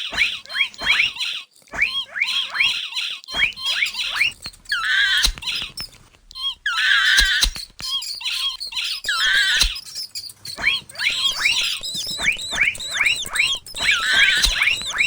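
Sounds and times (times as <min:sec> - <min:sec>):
sharp clicks: 0:03.3 - 0:06.6, 0:07.2 - 0:09.8, 0:11.0 - 0:15.0
mouse squeals: 0:07.2 - 0:10.3
rising chirps: 0:11.1 - 0:15.0.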